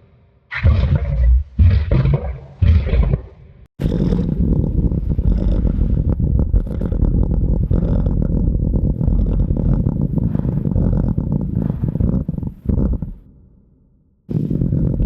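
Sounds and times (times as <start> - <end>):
low rattling creature purr: 2.8 - 13.2, 14.3 - 15.0.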